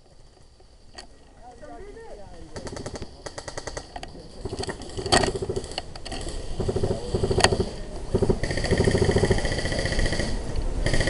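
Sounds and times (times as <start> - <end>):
airsoft guns firing bursts: 2.4 - 11.0
sharp crack: 2.4 - 11.0.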